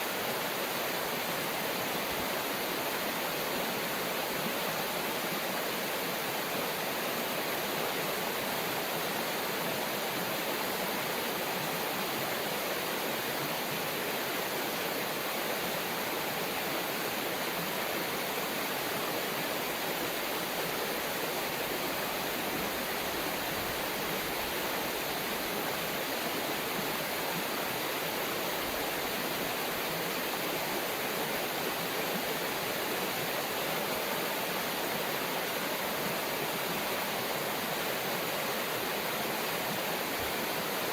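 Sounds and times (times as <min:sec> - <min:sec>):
river water rushing over rocks: 0:00.0 - 0:40.9.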